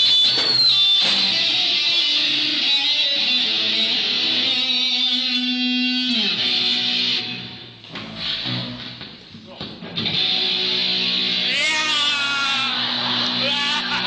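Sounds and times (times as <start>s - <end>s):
electric guitar through amplifier: 0.0s - 14.0s.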